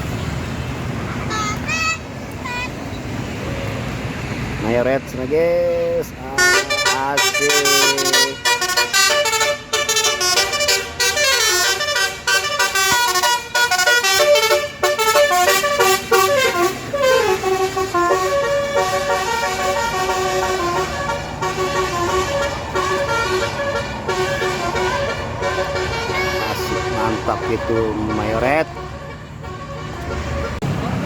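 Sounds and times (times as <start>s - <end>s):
electric musical horn melody: 6.4s - 30.6s.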